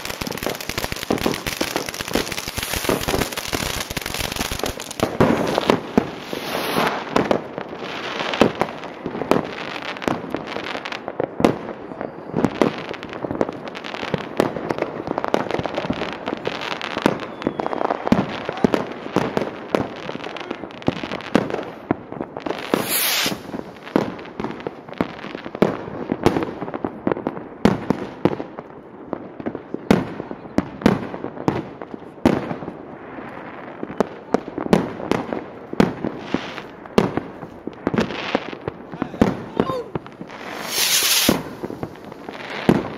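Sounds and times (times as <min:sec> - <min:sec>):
sharp bangs and crackles: 0:00.0 - 0:11.7, 0:34.7 - 0:42.9
high-pitched hissing burst: 0:22.7 - 0:23.5, 0:40.4 - 0:41.9.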